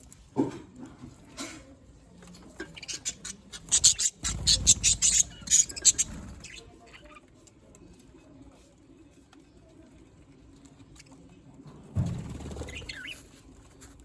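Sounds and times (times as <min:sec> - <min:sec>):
budgies pecking and crunching food: 0:00.0 - 0:14.0.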